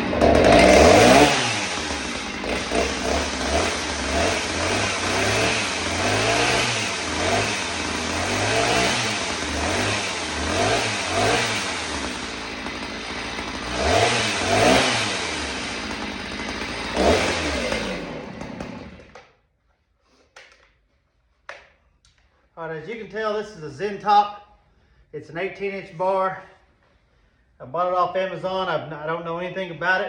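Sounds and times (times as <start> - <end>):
chainsaw engine revving: 0.0 - 19.3.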